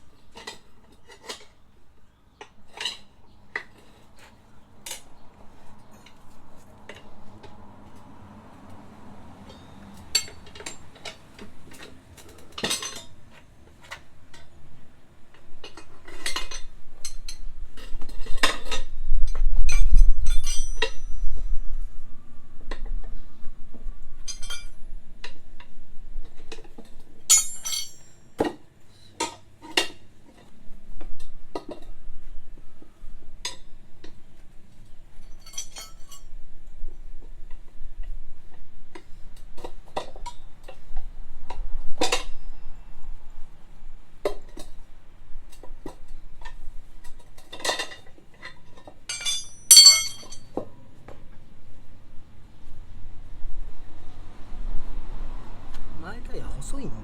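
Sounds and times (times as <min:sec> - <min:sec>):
metal tools clinking on wheel rim: 0:09.4 - 0:14.6, 0:15.3 - 0:21.2, 0:24.3 - 0:24.8, 0:27.3 - 0:28.5, 0:35.1 - 0:36.3, 0:47.1 - 0:50.6.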